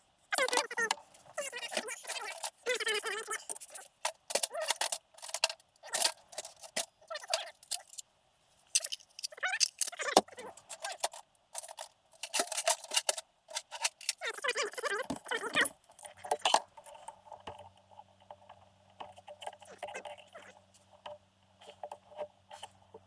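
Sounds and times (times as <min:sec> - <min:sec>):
metal parts clinking: 0:01.6 - 0:08.0, 0:08.7 - 0:16.6.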